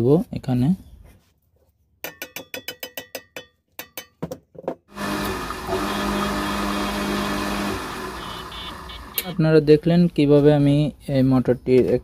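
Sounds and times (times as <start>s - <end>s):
electric water pump running: 4.9s - 9.4s.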